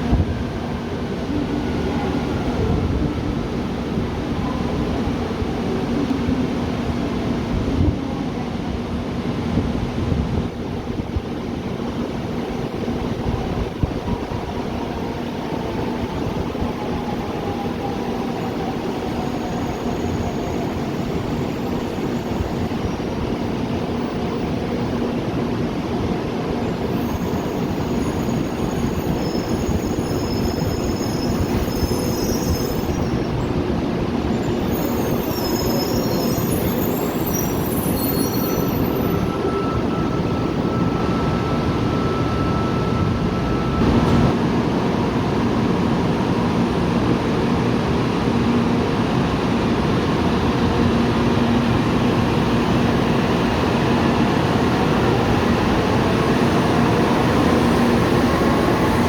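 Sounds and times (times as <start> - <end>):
train running on rails: 0.0 - 59.0
high thin wheel squeals: 26.9 - 33.4, 34.3 - 43.8.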